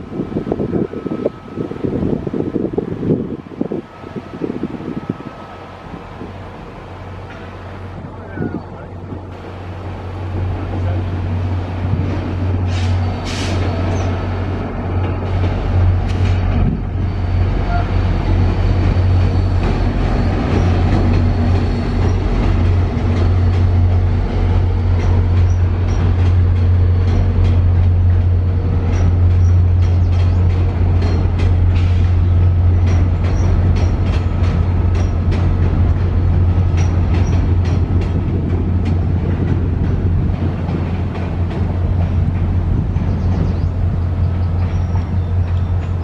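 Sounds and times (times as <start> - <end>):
train rumbling: 0.0 - 46.0
wheels clicking over rail joints: 20.5 - 46.0.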